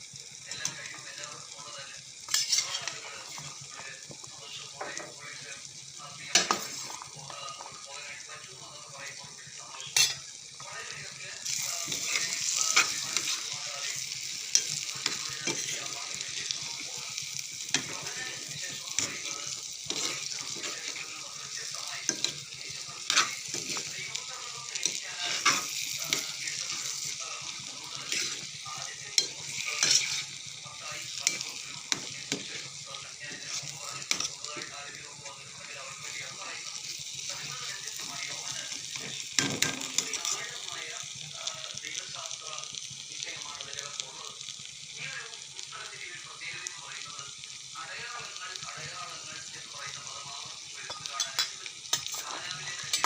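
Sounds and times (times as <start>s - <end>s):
food sizzling in a pan: 0.0s - 53.0s
spoon scraping a pan: 2.3s - 3.6s, 6.2s - 7.7s, 9.7s - 10.7s, 11.5s - 16.9s, 17.7s - 32.7s, 33.3s - 34.7s, 39.0s - 40.6s, 50.8s - 53.0s.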